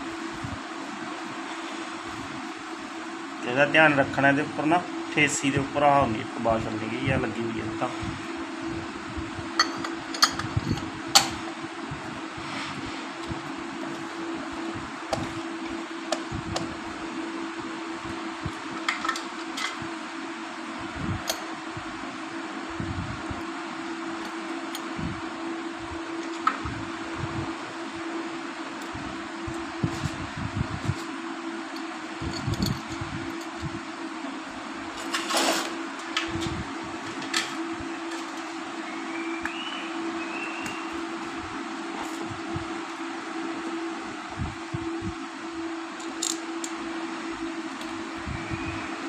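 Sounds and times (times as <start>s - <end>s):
workshop fan hum: 0.0s - 49.0s
metal parts clicking and clinking: 32.3s - 33.6s, 46.0s - 46.4s
scraping rustle: 34.9s - 35.8s.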